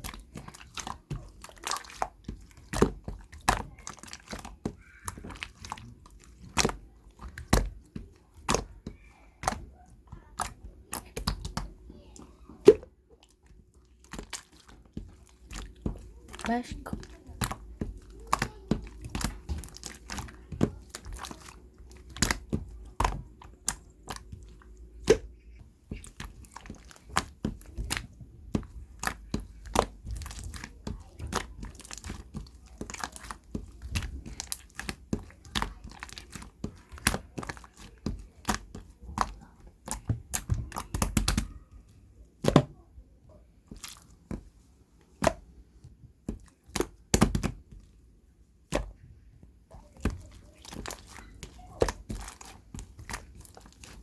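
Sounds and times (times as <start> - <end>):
crunchy chewing of food: 13.2 - 28.0, 43.7 - 44.2, 49.7 - 54.0.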